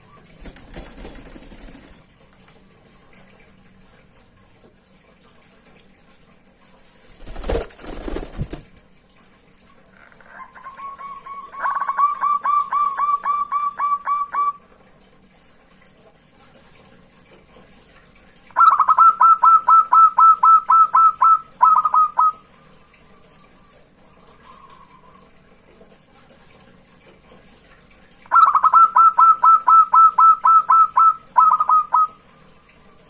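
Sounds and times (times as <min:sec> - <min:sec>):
dove cooing: 0:10.0 - 0:14.6, 0:18.6 - 0:22.4, 0:28.3 - 0:32.2.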